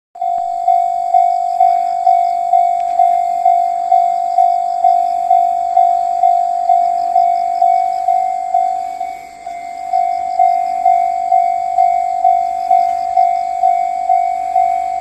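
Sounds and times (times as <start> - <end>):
level crossing warning bell: 0.2 - 15.0.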